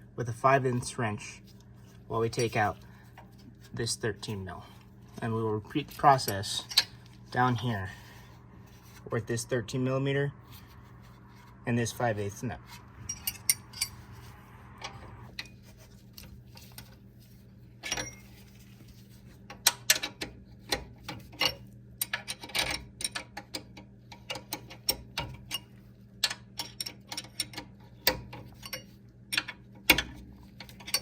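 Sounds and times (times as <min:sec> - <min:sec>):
steady low hum: 0:00.0 - 0:31.0
metal clicks of hand wrenches: 0:05.2 - 0:07.2, 0:19.5 - 0:31.0.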